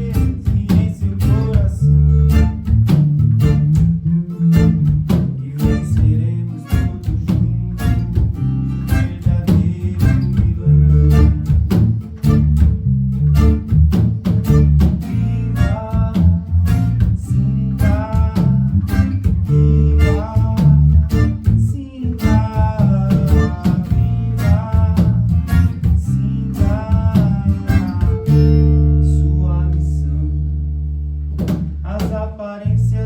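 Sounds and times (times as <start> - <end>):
person singing: 0.0 - 2.6, 4.3 - 8.1, 8.9 - 11.5, 15.3 - 30.5
strummed acoustic guitar: 0.0 - 30.0
bass line: 0.0 - 33.0.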